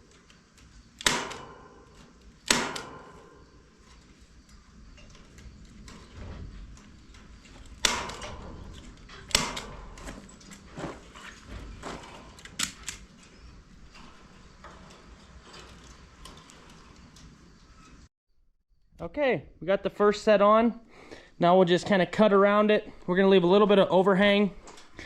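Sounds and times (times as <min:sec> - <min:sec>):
wire rustling: 0:00.0 - 0:18.1
staple gun firing into wood: 0:01.0 - 0:01.5.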